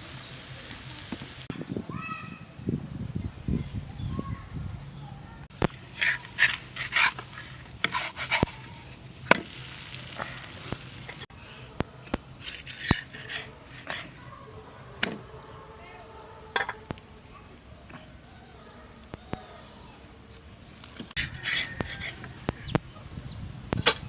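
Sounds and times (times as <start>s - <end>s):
food sizzling in hot oil: 0.0s - 1.5s, 5.5s - 11.3s.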